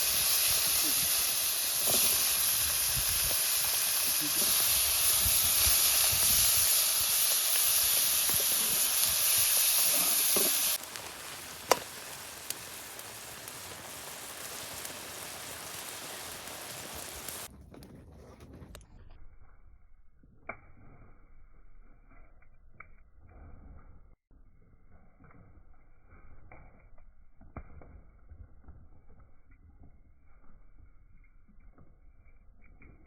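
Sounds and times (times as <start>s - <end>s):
food sizzling in a pan: 0.0s - 17.5s.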